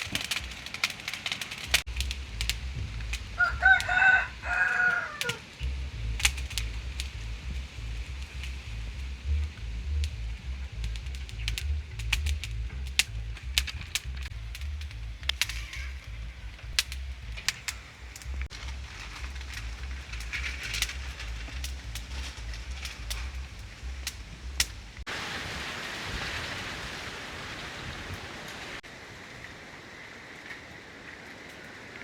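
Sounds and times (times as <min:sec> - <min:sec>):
rain hissing: 0:00.0 - 0:32.0
wood fire crackling and popping: 0:00.0 - 0:32.0
low rumble: 0:01.7 - 0:25.1.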